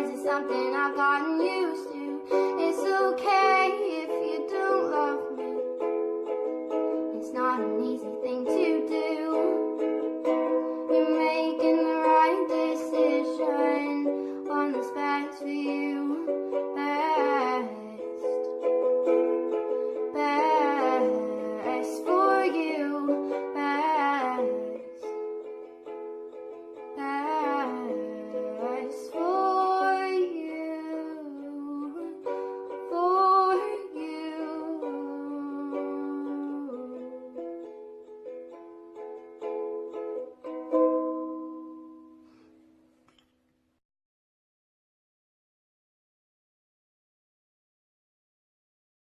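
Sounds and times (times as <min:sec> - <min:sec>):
plucked ukulele chords: 0:00.0 - 0:42.8
person singing long notes: 0:27.0 - 0:37.2.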